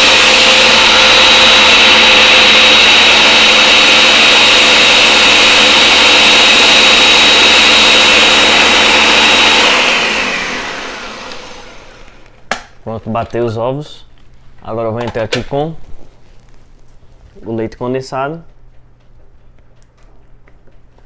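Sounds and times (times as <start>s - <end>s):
blender running: 0.0s - 12.4s.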